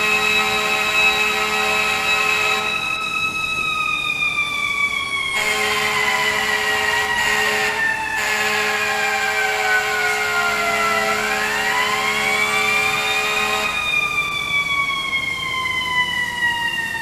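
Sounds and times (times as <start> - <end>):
truck air horn blasts: 0.0 - 2.8, 5.4 - 10.4, 12.1 - 13.8
fire engine siren winding down: 0.0 - 17.0.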